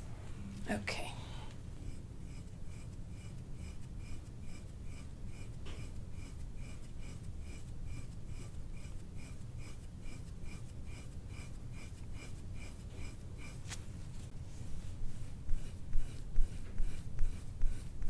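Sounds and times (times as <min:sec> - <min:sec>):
steady low hum: 0:00.0 - 0:18.0
hands rubbing skin: 0:06.6 - 0:18.0.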